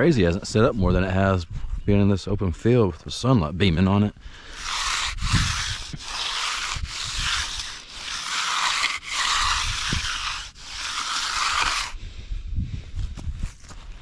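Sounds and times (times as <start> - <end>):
steel tool scraping concrete: 4.4 - 12.0.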